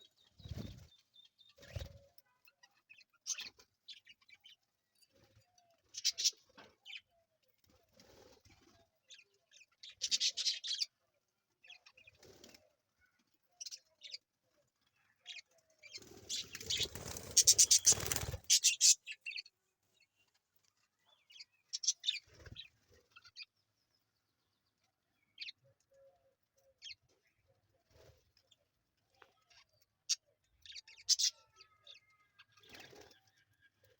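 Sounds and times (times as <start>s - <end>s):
wings flapping and rustling: 0.4s - 1.0s, 1.6s - 2.0s, 15.9s - 19.0s
parrot chirping: 17.3s - 19.1s.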